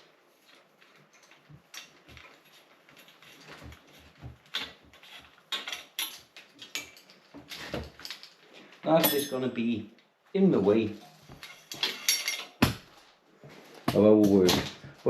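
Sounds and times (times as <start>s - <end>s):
metal tools clicking and clinking: 1.1s - 9.5s, 11.0s - 12.8s.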